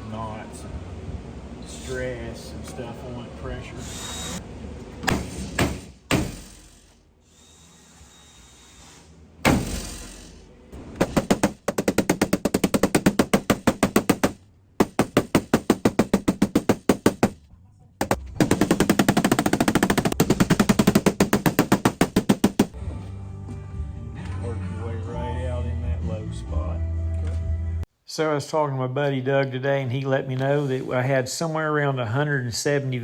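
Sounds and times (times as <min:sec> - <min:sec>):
knock on metal panel: 0:11.0 - 0:17.4, 0:18.0 - 0:22.8
rapid tapping on sheet metal: 0:11.0 - 0:17.4, 0:18.0 - 0:22.8.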